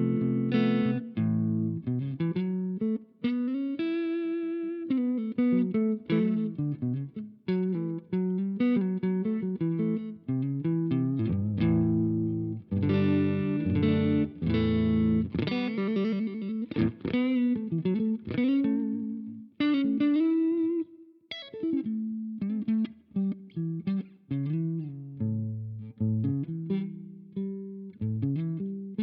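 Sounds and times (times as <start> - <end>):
electric guitar with overdrive: 0.0 - 29.0.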